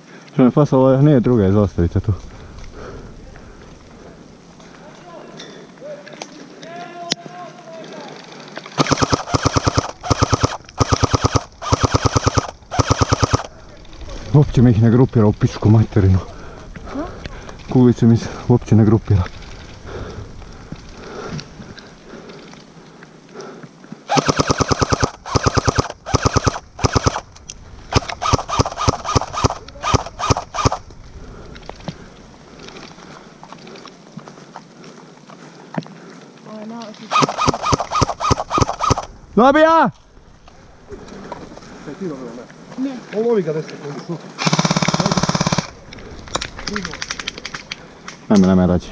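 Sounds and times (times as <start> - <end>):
airsoft gun firing bursts: 8.8 - 13.5, 24.1 - 27.3, 27.9 - 30.8, 37.1 - 39.1, 44.4 - 45.8.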